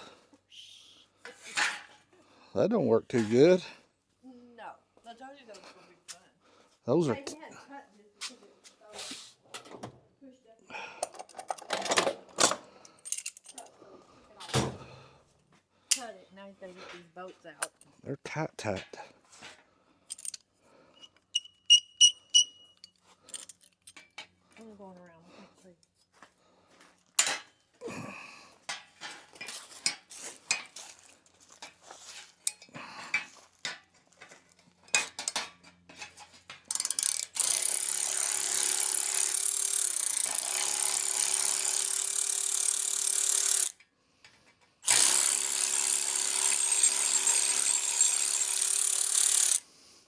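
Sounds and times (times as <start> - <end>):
metal parts clinking: 11.0 - 13.7, 20.1 - 24.3, 32.5 - 38.1
cordless power tool running: 37.4 - 43.7, 44.8 - 49.6.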